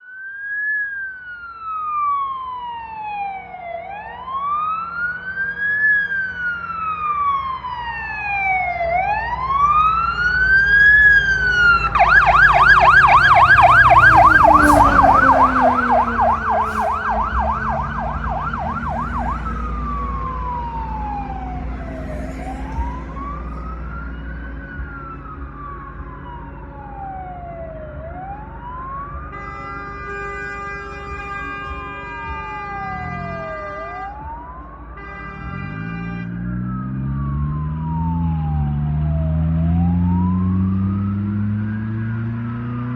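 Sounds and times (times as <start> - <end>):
fire truck siren: 0.0 - 42.9
horn honking: 11.6 - 24.0, 29.1 - 37.5.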